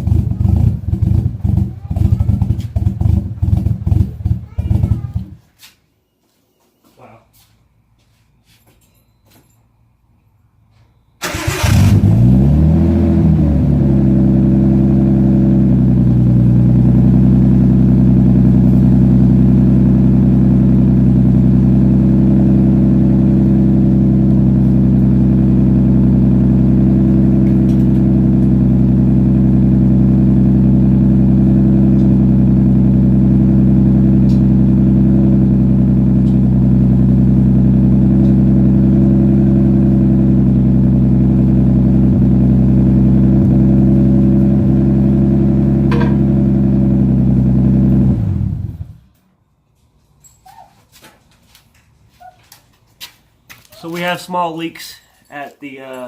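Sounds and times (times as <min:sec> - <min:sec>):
car engine starting and idling: 0:11.2 - 0:49.2.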